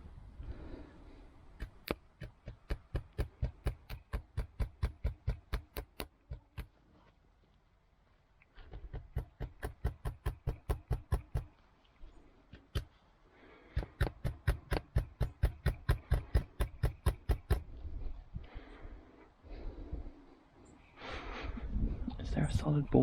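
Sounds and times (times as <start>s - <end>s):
hammer striking nails into wood: 1.6s - 6.7s, 8.7s - 11.5s, 13.7s - 17.7s.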